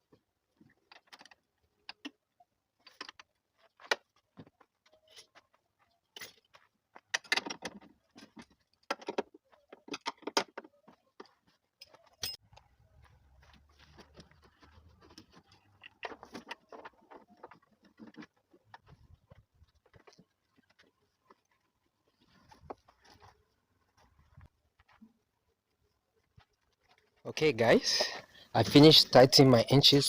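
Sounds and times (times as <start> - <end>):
metallic clinks of hand tools: 11.8 - 12.4.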